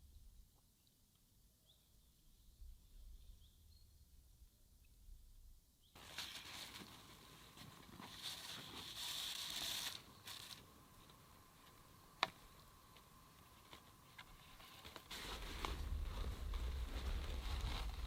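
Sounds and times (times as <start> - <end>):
soft rustling and handling: 6.0 - 18.0
low rumble: 15.4 - 18.0.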